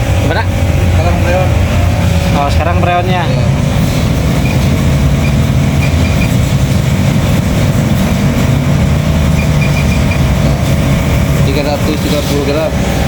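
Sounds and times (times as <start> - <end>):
machine low mechanical rumble: 0.0 - 13.0
faint high beeps: 4.4 - 6.4, 9.3 - 10.3.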